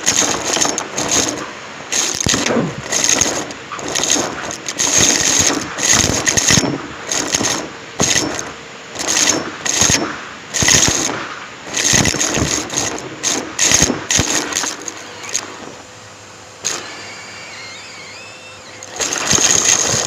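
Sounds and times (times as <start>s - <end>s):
vacuum suction surges: 0.0s - 7.9s
debris rattling: 0.0s - 15.8s, 18.8s - 20.0s
vacuum cleaner motor: 0.0s - 20.0s.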